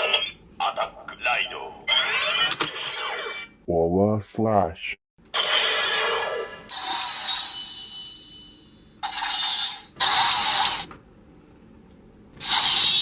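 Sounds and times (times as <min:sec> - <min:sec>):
high ringing tone: 0:07.1 - 0:09.9.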